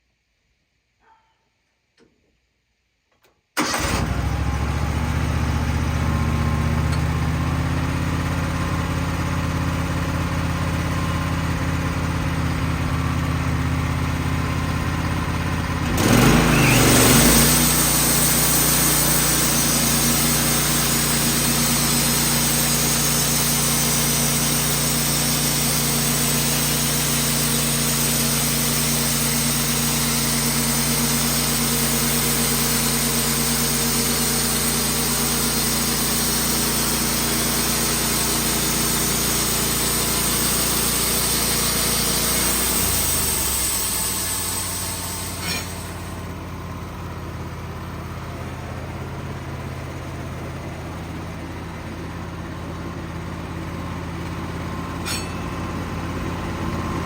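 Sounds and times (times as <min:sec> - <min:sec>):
sawmill engine idling and revving: 0:03.6 - 0:57.0.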